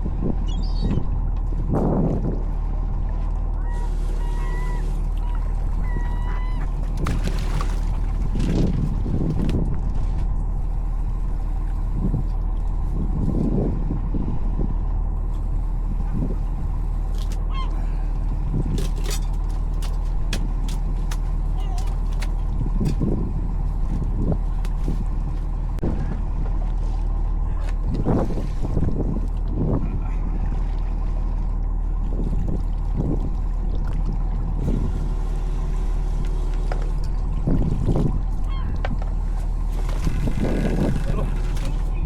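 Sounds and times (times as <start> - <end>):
boat engine running: 0.0 - 42.0.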